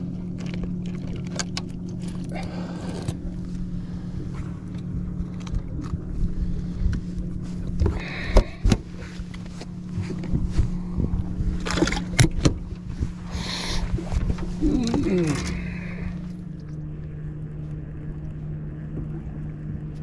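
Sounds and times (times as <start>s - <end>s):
motor humming: 0.0s - 20.0s.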